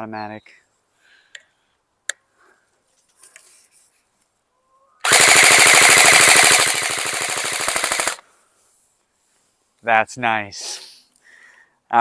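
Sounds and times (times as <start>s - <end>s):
airsoft rifle full-auto firing: 5.0s - 8.2s.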